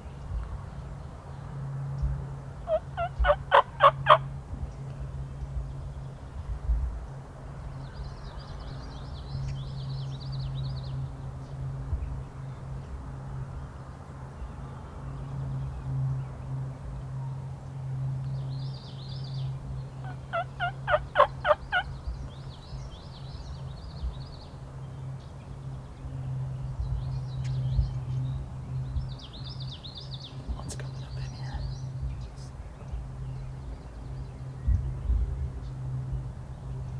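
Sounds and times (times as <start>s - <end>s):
songbirds singing: 0.0s - 36.9s
steady low hum: 0.0s - 36.9s
wild turkey yelping: 2.7s - 4.2s, 20.0s - 21.9s.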